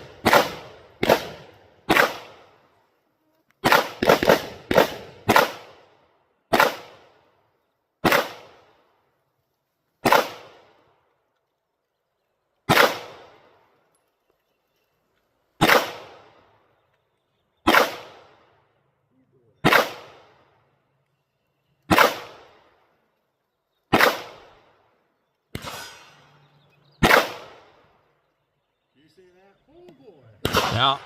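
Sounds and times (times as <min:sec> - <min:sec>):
pistol shots with echo: 0:00.0 - 0:02.6, 0:03.6 - 0:07.2, 0:08.0 - 0:08.8, 0:10.0 - 0:10.8, 0:12.7 - 0:13.6, 0:15.6 - 0:16.5, 0:17.6 - 0:18.6, 0:19.6 - 0:20.4, 0:21.9 - 0:22.8, 0:23.9 - 0:24.8, 0:25.5 - 0:26.1, 0:27.0 - 0:27.9, 0:30.4 - 0:31.0.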